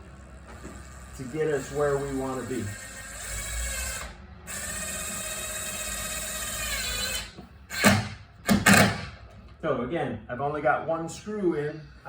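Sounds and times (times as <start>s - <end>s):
drill driving a screw: 0.5s - 9.1s.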